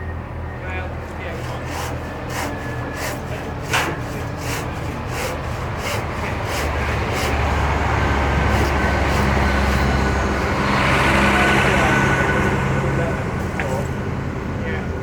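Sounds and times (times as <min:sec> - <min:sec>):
engine rumbling: 0:00.0 - 0:15.0
rhythmic scraping strokes: 0:01.1 - 0:11.4.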